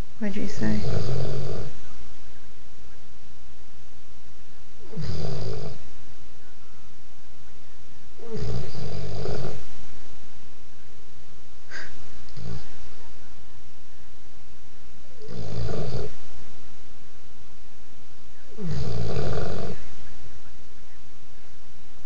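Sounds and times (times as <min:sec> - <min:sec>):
person snoring: 0:00.5 - 0:01.8, 0:04.8 - 0:05.9, 0:08.2 - 0:09.8, 0:11.7 - 0:13.0, 0:15.2 - 0:16.3, 0:18.6 - 0:20.0.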